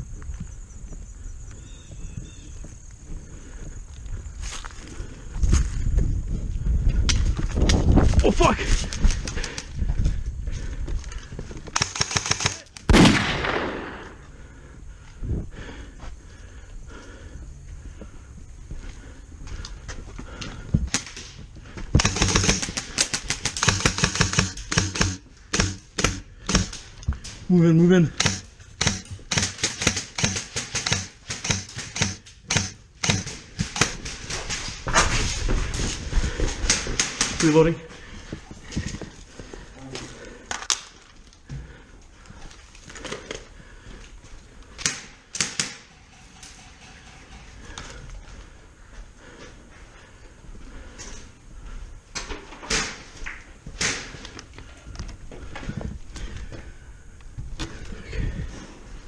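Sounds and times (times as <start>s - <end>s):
airsoft rifle clicks and clacks: 11.6s - 14.2s, 21.9s - 27.4s, 28.2s - 34.8s, 44.6s - 48.2s
airsoft rifle shots: 12.9s - 14.4s.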